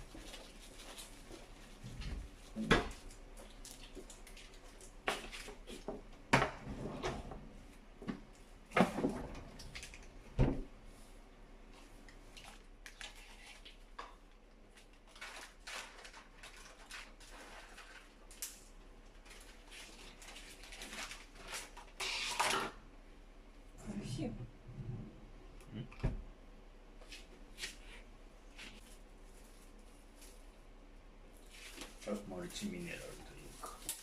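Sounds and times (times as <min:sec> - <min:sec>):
rustling: 0:31.3 - 0:34.0.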